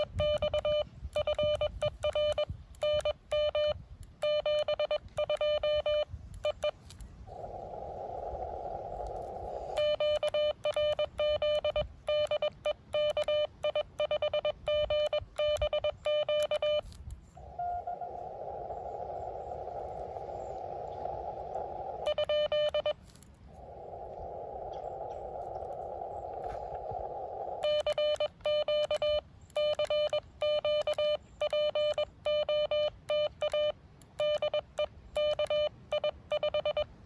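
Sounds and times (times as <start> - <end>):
morse code beeps: 0.0 - 6.8, 9.7 - 17.0, 22.1 - 23.0, 27.6 - 36.9.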